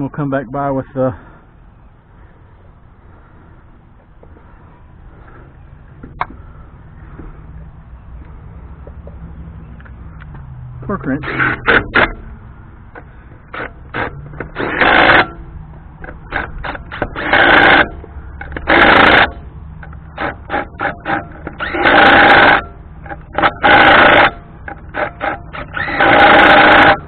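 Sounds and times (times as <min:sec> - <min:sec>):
wrench clicks: 0:16.0 - 0:27.0
wrench rattling on lug nuts: 0:16.0 - 0:27.0.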